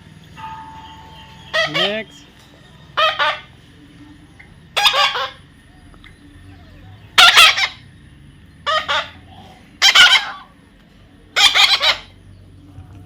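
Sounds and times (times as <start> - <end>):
parrot squawking: 1.4 - 2.1, 3.0 - 3.5, 4.7 - 5.4, 6.4 - 7.8, 8.6 - 10.5, 11.3 - 12.2.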